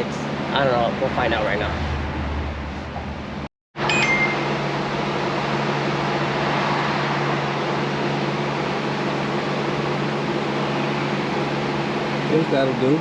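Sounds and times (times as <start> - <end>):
electric fan motor whirring: 4.4 - 13.0.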